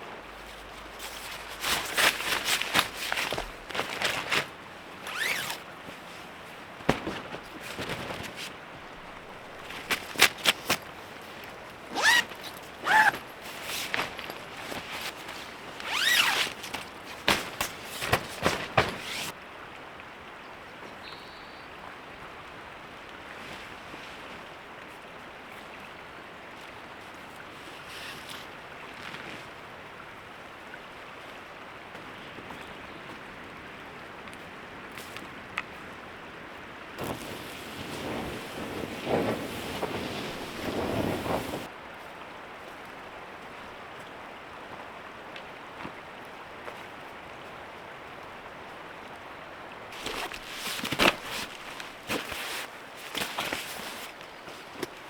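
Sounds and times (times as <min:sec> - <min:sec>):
creek rushing: 0:00.2 - 0:19.6, 0:37.0 - 0:55.0
short squeaks: 0:11.9 - 0:13.2.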